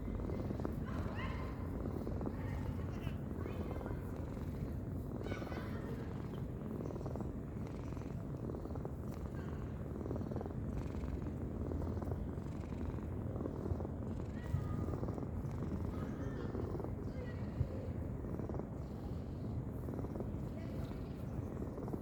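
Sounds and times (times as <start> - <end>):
cat snoring: 6.1 - 22.0.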